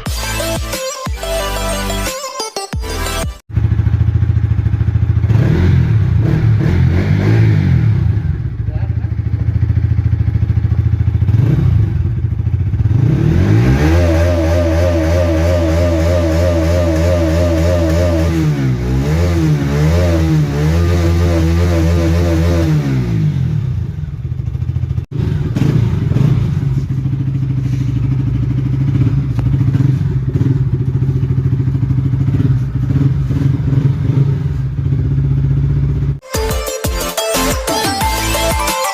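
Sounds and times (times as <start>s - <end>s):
motorcycle engine revving and idling: 3.4s - 36.2s.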